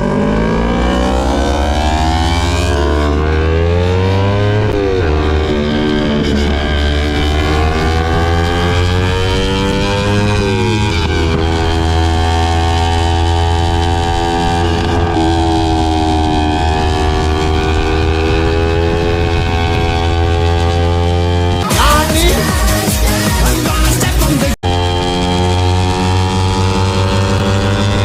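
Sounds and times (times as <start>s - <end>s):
motorcycle engine running: 0.0s - 28.0s.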